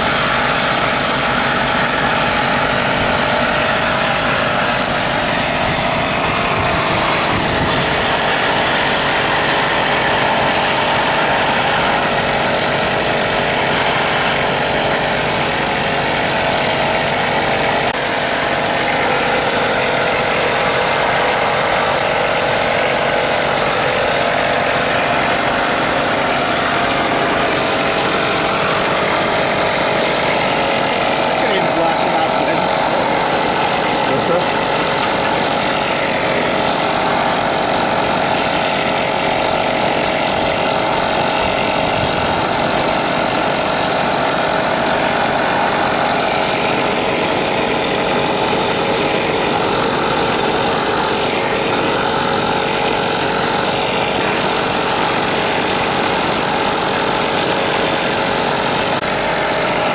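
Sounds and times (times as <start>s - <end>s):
machine motor droning loudly: 0.0s - 59.9s.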